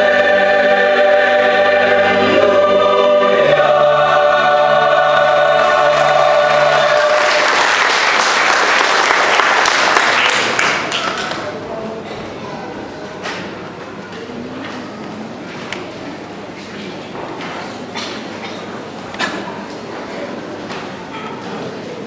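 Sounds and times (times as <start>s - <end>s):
choir singing a chord: 0.0s - 8.4s
audience applauding: 5.6s - 11.5s.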